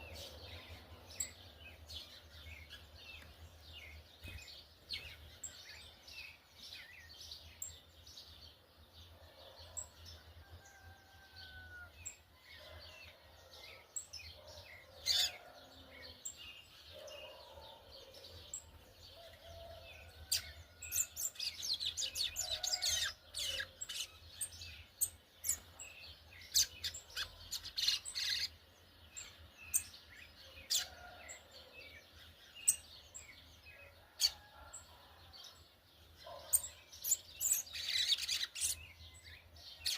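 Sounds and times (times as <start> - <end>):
bird chirping and trilling: 36.2 - 39.2.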